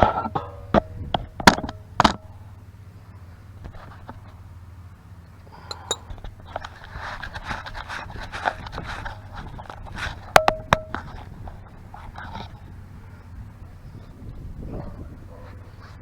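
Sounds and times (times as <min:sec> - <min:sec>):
metal tools clinking and scraping: 0:00.0 - 0:02.4, 0:05.6 - 0:11.2
sharp metallic clanks: 0:00.0 - 0:02.6, 0:05.7 - 0:06.2, 0:10.2 - 0:11.2.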